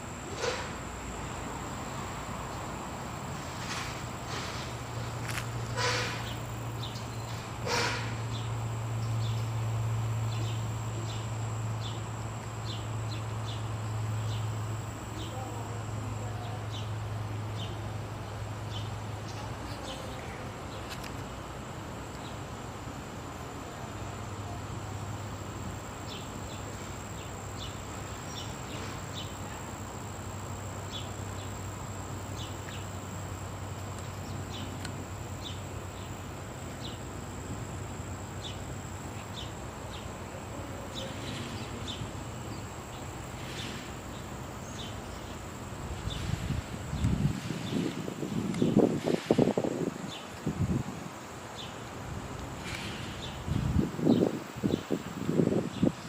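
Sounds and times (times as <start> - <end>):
insects chirping: 0.0 - 56.0.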